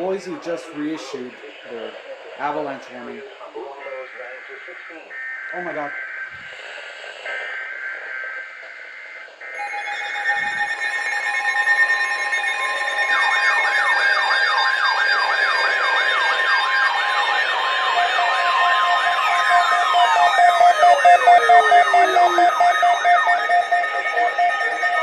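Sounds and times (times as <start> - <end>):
steady high alarm tones: 3.8 - 25.0
rapid yelping siren: 9.3 - 25.0.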